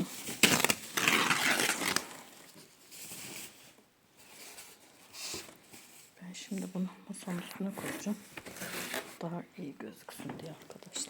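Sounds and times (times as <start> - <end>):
packaging crinkling and rustling: 0.0 - 6.2.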